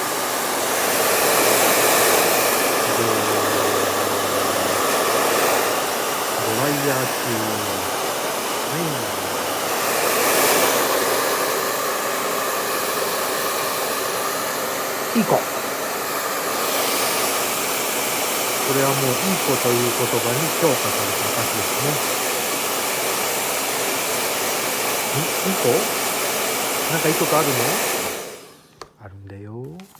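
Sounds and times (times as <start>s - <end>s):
hair dryer blowing: 0.0s - 28.9s.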